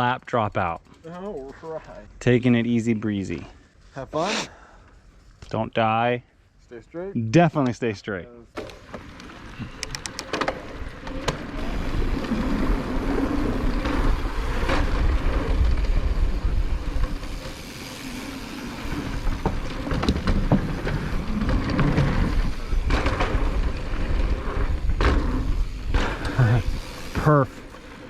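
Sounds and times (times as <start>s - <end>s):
mountain bike rolling on dirt trail: 0.0s - 4.0s, 8.5s - 28.0s
bike clacks and rattles from bumps: 8.6s - 28.0s.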